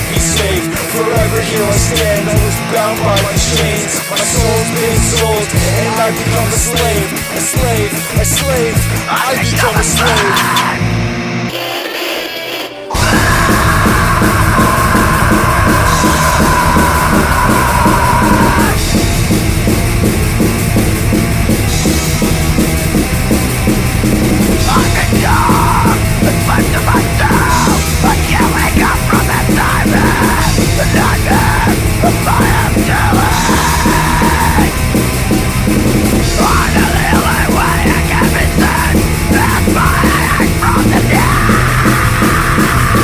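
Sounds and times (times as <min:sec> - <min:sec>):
heavy metal band playing: 0:00.0 - 0:43.0
bending high guitar line: 0:12.9 - 0:43.0.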